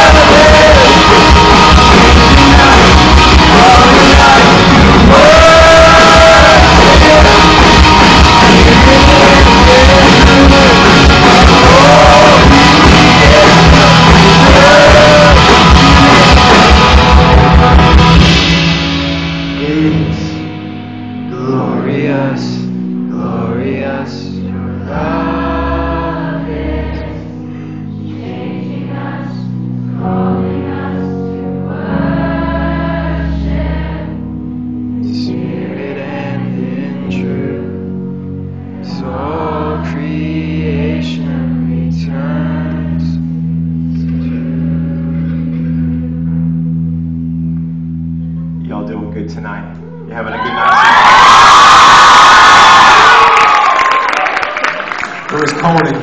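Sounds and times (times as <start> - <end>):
person singing: 0.0 - 18.5, 19.6 - 20.6, 21.2 - 34.2, 35.0 - 37.9, 38.6 - 43.2
steady drum beat: 0.0 - 20.2
live rock band playing: 0.0 - 23.1
held chords: 0.0 - 53.4.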